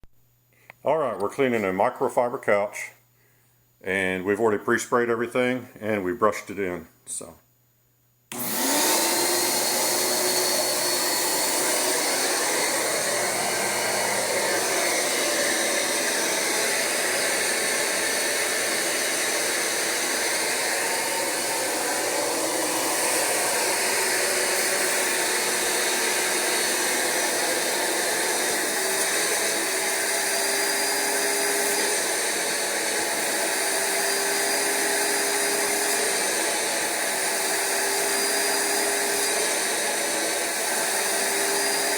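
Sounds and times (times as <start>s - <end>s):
carpet cleaner vacuum motor running: 8.3s - 41.9s.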